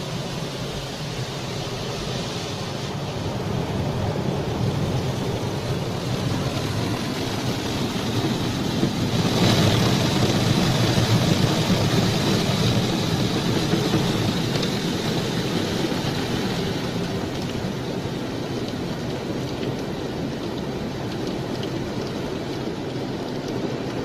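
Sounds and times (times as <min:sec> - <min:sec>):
muffled car wash rushing: 0:00.0 - 0:24.0.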